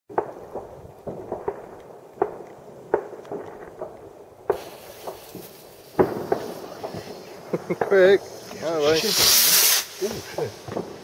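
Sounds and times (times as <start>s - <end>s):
distant fireworks banging and popping: 0.1s - 11.0s
steady high hiss: 4.2s - 11.0s.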